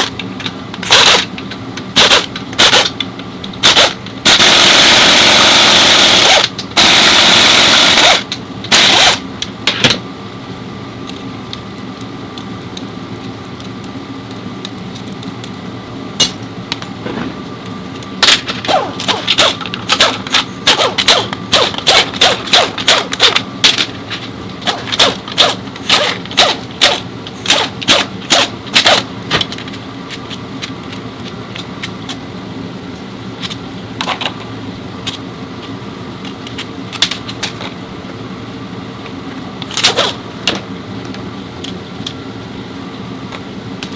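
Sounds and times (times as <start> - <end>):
low shop hum: 0.0 - 43.9
impact wrench rattling: 18.3 - 24.0.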